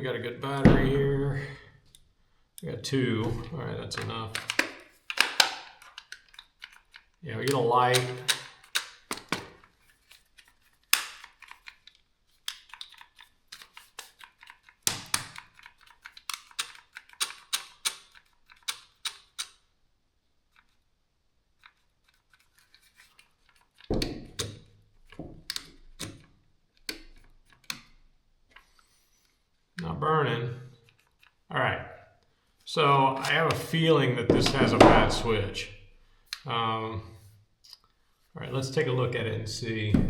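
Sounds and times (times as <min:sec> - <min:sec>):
heavy thuds: 0:00.6 - 0:01.4, 0:34.3 - 0:35.4
drill clicks and knocks: 0:04.0 - 0:06.8, 0:07.5 - 0:09.6, 0:14.9 - 0:19.5, 0:23.9 - 0:26.3.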